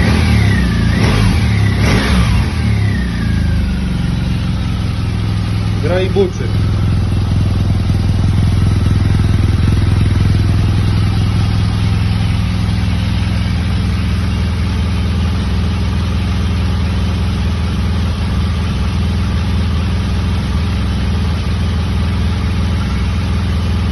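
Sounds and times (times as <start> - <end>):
motorcycle engine idling: 0.0 - 23.9.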